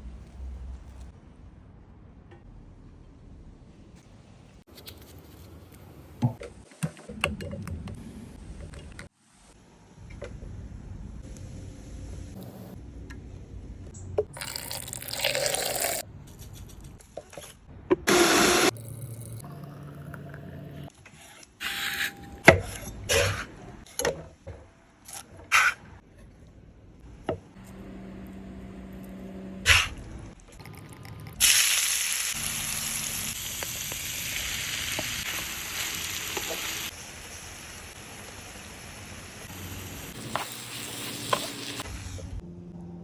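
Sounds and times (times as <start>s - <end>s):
food sizzling in a pan: 31.4s - 41.8s.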